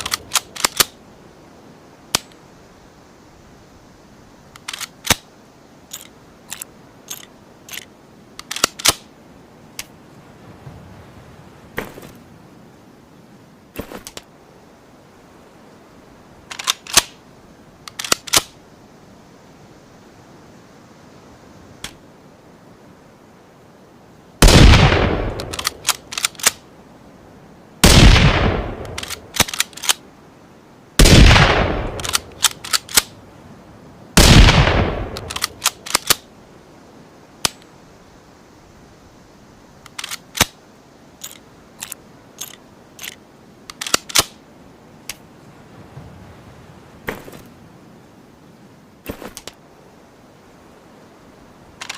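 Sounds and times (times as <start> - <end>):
rifle bolt mechanical clicks: 0.0 - 1.0, 4.5 - 5.2, 5.9 - 9.1, 16.5 - 17.2, 17.8 - 18.6, 25.3 - 26.6, 28.8 - 30.0, 31.9 - 33.1, 35.1 - 36.2, 39.9 - 40.6, 41.2 - 44.4
light clicks: 4.5 - 5.2, 25.3 - 26.6, 35.1 - 36.2, 39.8 - 40.6
rifle gunshots with echo: 24.4 - 25.6, 27.8 - 29.0, 31.0 - 32.2, 34.2 - 35.4.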